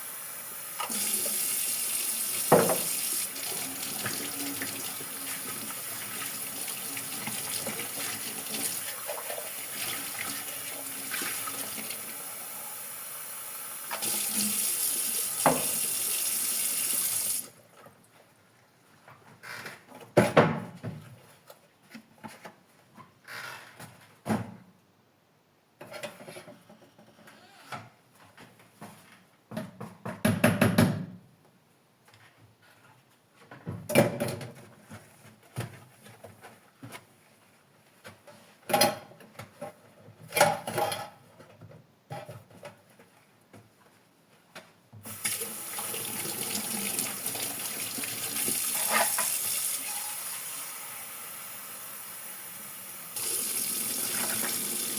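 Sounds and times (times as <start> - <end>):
tap running: 2.3 - 4.8.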